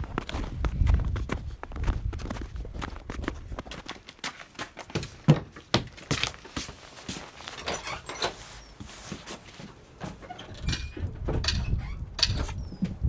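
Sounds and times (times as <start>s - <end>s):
knocks and thumps: 10.0s - 13.0s.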